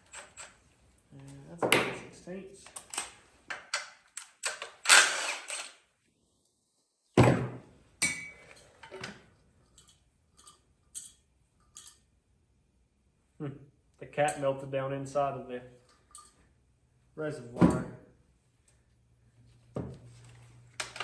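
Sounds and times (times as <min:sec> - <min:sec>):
metal tools clanking: 0:08.0 - 0:12.0, 0:16.0 - 0:16.4.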